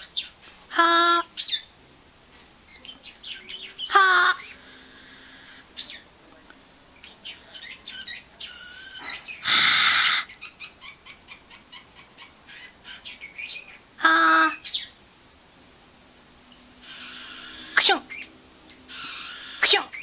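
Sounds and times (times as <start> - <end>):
parrot chirping and chattering: 0.0 - 2.0, 2.6 - 6.1, 7.0 - 15.0, 16.8 - 20.0
harsh hissing burst: 16.8 - 18.1.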